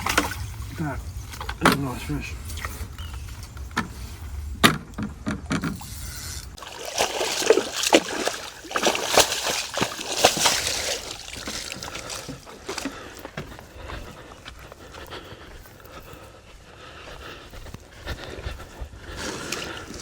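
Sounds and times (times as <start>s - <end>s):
fish splashing at water surface: 6.6s - 12.9s.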